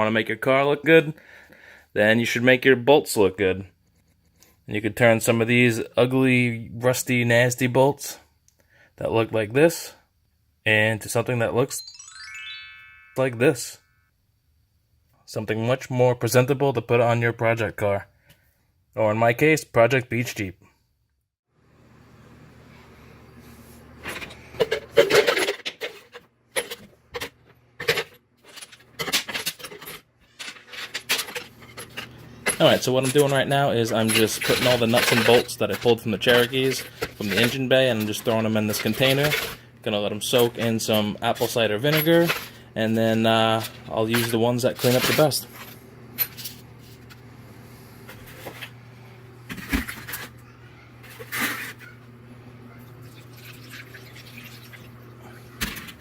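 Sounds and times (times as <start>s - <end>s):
metal bolts clattering into container: 24.0s - 33.4s.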